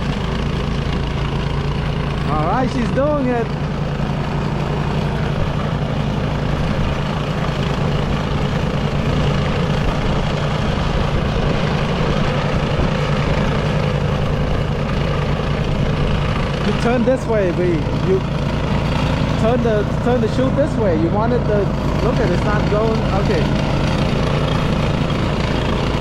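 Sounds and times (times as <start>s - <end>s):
snowblower engine droning: 0.0s - 26.0s.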